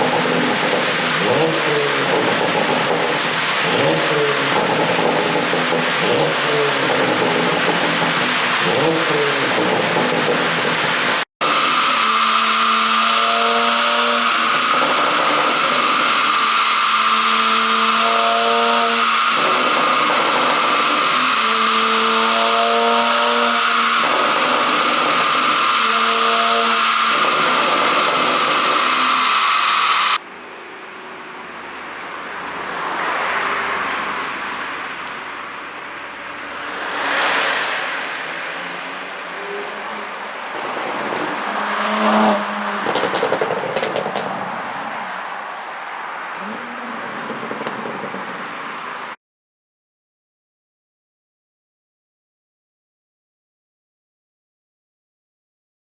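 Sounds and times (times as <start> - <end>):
car engine revving: 0.0 - 49.2
loud steady rushing noise: 0.0 - 49.2
car driving past: 30.1 - 49.2.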